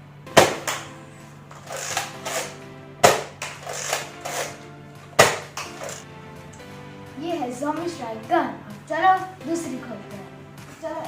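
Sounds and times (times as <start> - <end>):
background music: 0.0 - 11.0
handling sounds: 1.5 - 6.0
toy blaster firing clacks: 1.6 - 4.6, 5.2 - 6.0.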